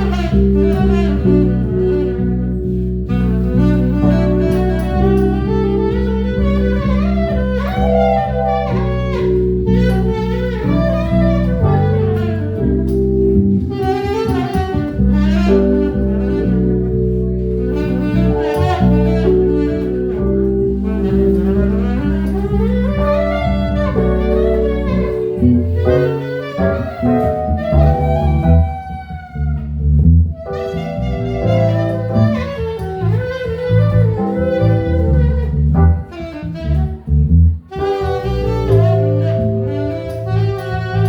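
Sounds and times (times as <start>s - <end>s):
instrumental jazz music: 0.0s - 41.0s.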